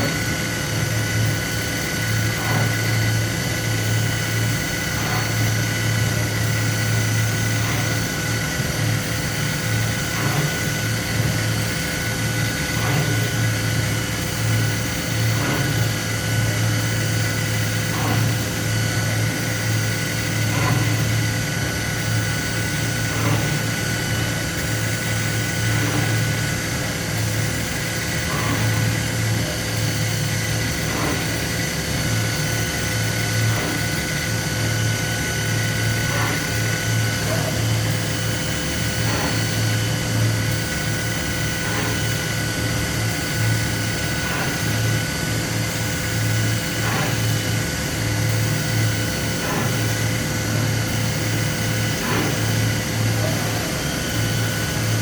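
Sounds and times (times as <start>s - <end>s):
machine motor hum with whine: 0.0s - 55.0s
short repeating machine sound: 19.3s - 26.5s.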